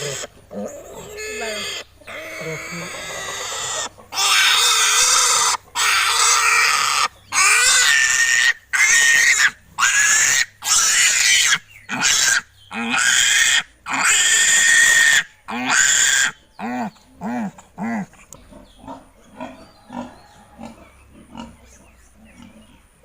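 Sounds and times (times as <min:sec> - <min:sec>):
pig squealing loudly: 0:00.0 - 0:18.1
pigs grunting: 0:00.0 - 0:23.0.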